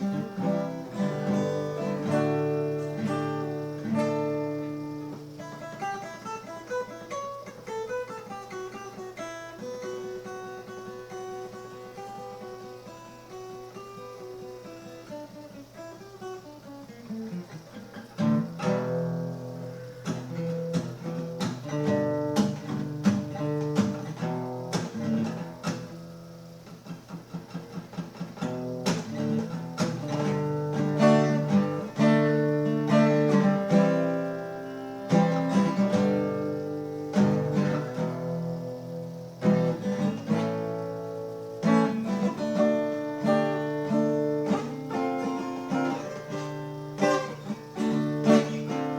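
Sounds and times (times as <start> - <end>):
solo guitar playing: 0.0 - 48.9.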